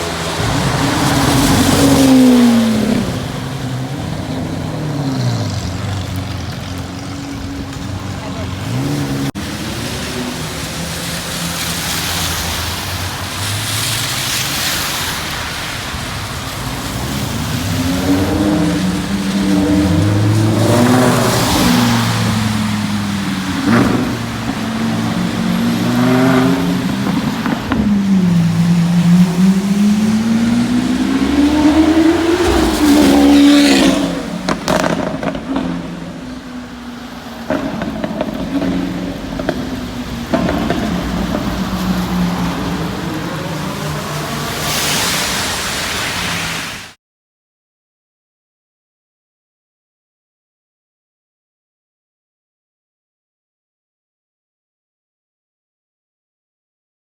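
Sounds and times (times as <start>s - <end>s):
sports car engine revving: 0.0s - 14.2s, 16.2s - 46.1s
exhaust crackles and pops: 0.0s - 44.7s.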